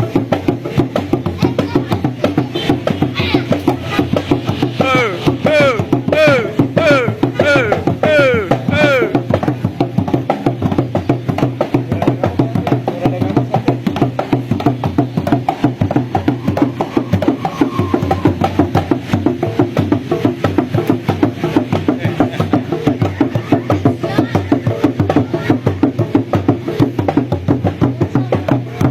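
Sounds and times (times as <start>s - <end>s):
music with wood-block percussion: 0.0s - 28.9s
voice-like calls: 1.4s - 9.3s, 16.1s - 18.8s
bass line: 4.8s - 9.2s.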